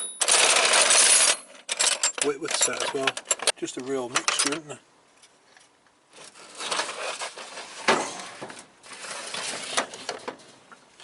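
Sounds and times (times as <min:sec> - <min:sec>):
hand tools rattling in a drawer: 0:00.0 - 0:03.6.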